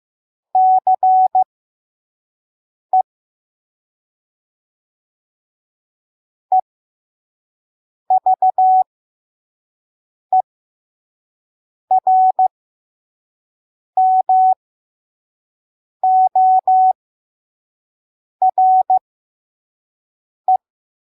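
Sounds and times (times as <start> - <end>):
morse code beeps: 18.5 - 19.0.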